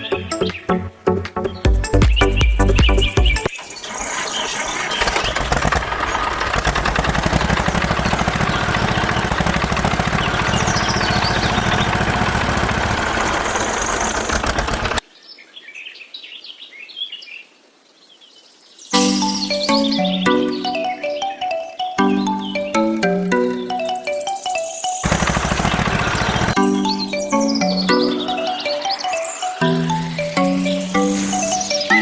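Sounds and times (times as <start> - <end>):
birds chirping: 1.4 - 5.4, 10.0 - 16.6, 18.6 - 32.0
loud mechanical running noise: 6.3 - 15.0, 25.0 - 26.6.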